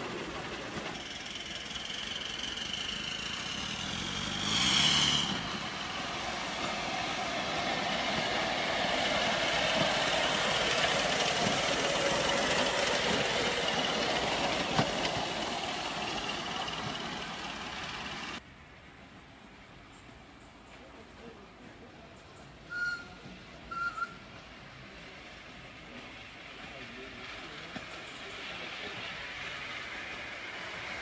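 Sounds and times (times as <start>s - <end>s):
steam locomotive hissing: 0.0s - 18.4s, 23.7s - 31.0s
high-pitched whistle blast: 22.7s - 24.2s.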